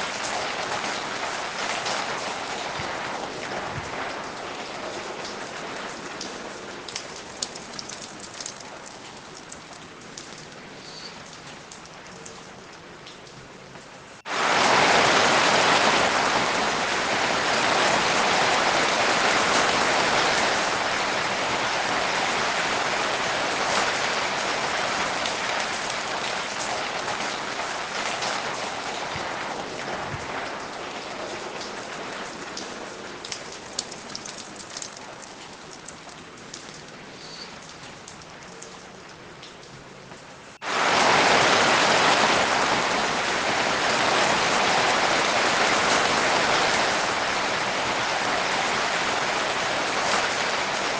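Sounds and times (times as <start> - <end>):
rain falling: 0.0 - 50.9
drips ticking: 6.2 - 14.2, 32.6 - 40.6.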